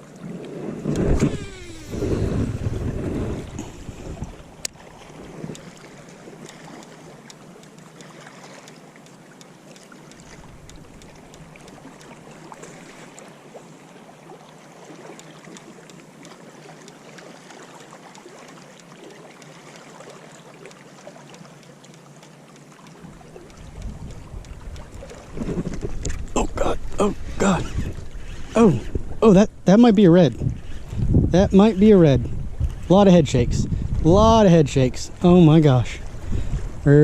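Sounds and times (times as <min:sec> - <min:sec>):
water lapping along shore: 0:00.0 - 0:37.0
faint clicks: 0:06.4 - 0:13.3, 0:15.1 - 0:19.9, 0:20.6 - 0:27.0.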